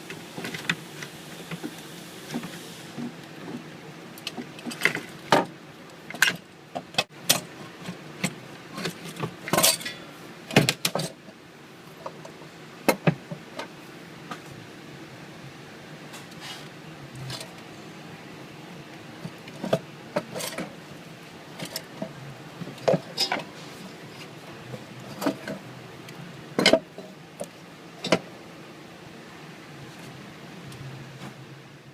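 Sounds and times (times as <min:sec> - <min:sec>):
hand tools clicking and clanking: 0:04.2 - 0:11.4, 0:19.2 - 0:20.9, 0:21.5 - 0:28.3.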